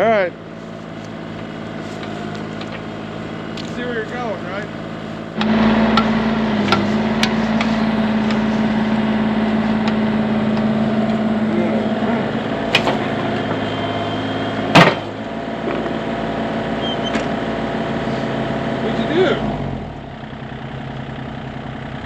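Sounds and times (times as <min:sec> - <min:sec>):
excavator diesel engine digging: 0:00.0 - 0:22.0
loud metal clank: 0:14.7 - 0:15.8.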